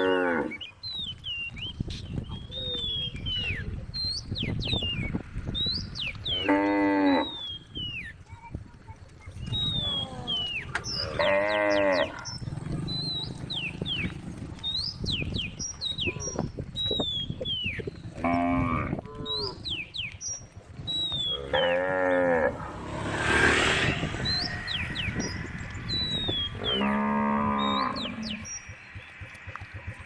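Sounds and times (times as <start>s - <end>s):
cows mooing: 0.0s - 0.7s, 6.3s - 7.6s, 9.9s - 14.5s, 18.1s - 19.7s, 21.2s - 28.7s
brief rushing noise: 22.6s - 26.4s.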